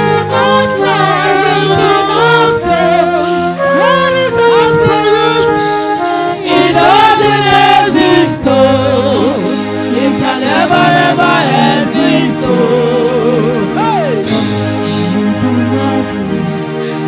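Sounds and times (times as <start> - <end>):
gospel singing voices: 0.0 - 17.0
sustained instrumental chords: 0.0 - 17.0.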